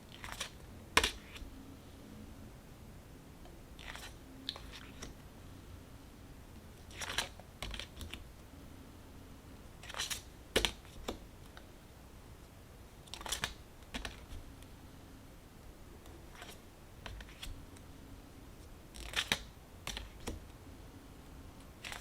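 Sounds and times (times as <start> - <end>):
cards snapping and sliding: 6.9 - 8.2, 9.8 - 11.2, 13.1 - 14.4, 19.0 - 20.4, 21.8 - 22.0.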